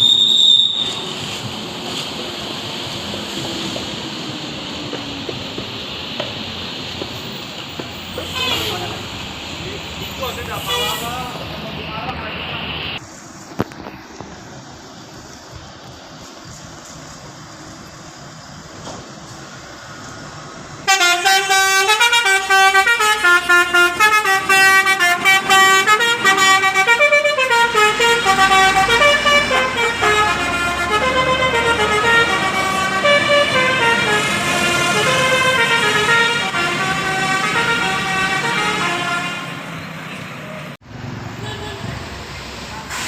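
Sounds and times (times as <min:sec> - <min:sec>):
bus air horn melody: 0:08.2 - 0:09.1, 0:10.6 - 0:11.1, 0:20.9 - 0:39.6.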